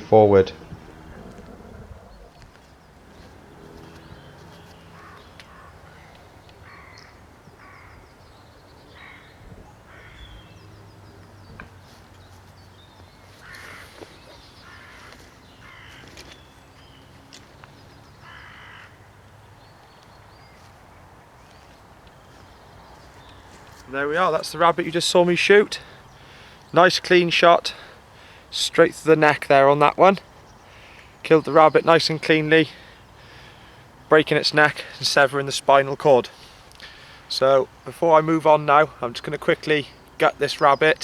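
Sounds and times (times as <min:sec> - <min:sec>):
crow cawing: 0:04.9 - 0:08.1, 0:08.9 - 0:10.5, 0:13.4 - 0:16.4, 0:18.2 - 0:19.2.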